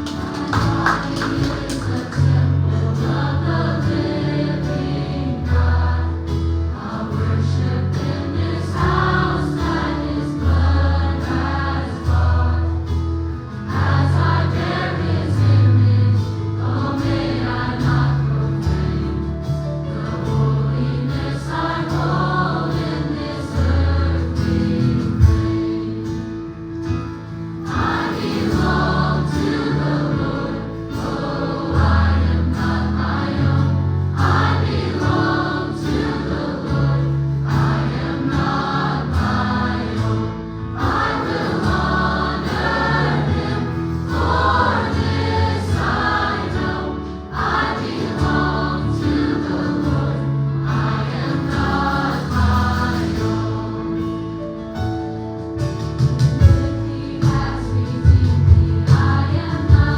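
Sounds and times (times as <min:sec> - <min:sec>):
choir singing gospel song: 0:00.0 - 0:54.6, 0:56.3 - 0:59.9
bass line: 0:00.6 - 0:54.7, 0:55.6 - 0:59.9
instrumental accompaniment: 0:34.2 - 0:50.2.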